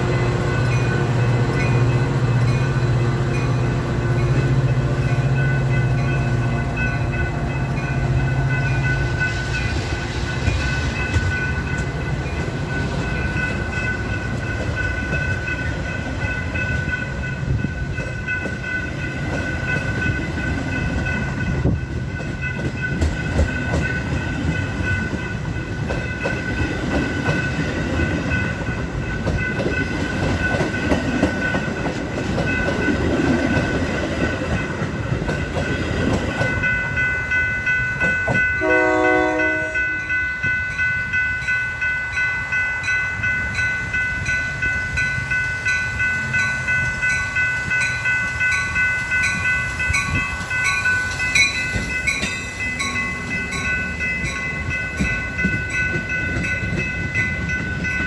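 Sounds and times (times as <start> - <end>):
crossing warning bells ringing: 0.0 - 58.0
train rumbling past: 0.0 - 58.0
train wheels clacking: 0.0 - 58.0
train horn blast: 38.6 - 40.1.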